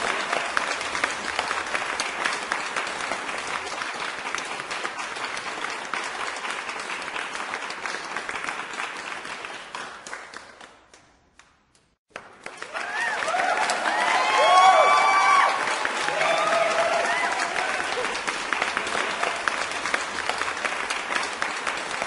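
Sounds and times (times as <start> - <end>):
crowd applause: 0.0 - 10.7, 12.1 - 22.0.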